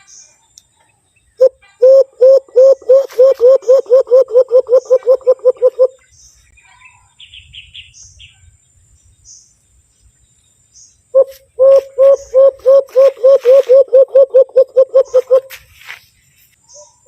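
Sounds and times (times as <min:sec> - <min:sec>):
faint high bird chirps: 0:00.0 - 0:17.0
hollow hoots blown into hands: 0:11.2 - 0:15.5.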